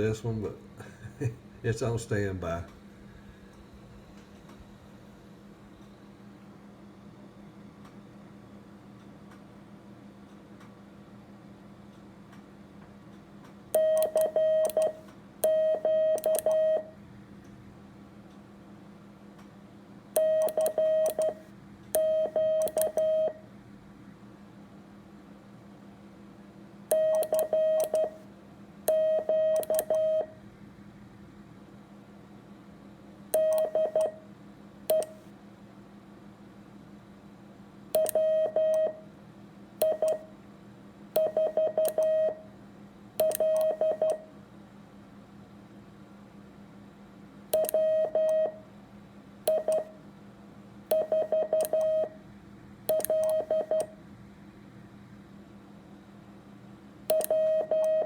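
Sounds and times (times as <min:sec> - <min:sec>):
morse code beeps: 0:13.8 - 0:16.9, 0:20.2 - 0:21.4, 0:22.0 - 0:23.4, 0:26.9 - 0:28.2, 0:28.9 - 0:30.3, 0:33.4 - 0:34.2, 0:38.0 - 0:39.0, 0:39.8 - 0:40.2, 0:41.2 - 0:42.4, 0:43.2 - 0:44.2, 0:47.6 - 0:48.6, 0:49.5 - 0:49.9, 0:51.0 - 0:52.2, 0:52.9 - 0:53.9, 0:57.1 - 0:58.0.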